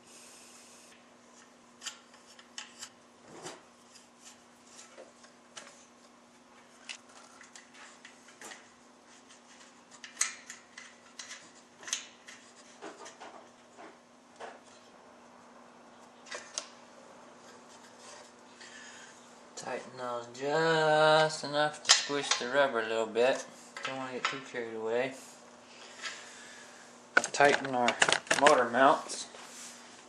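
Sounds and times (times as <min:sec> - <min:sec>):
faint steady hum: 0:00.0 - 0:30.0.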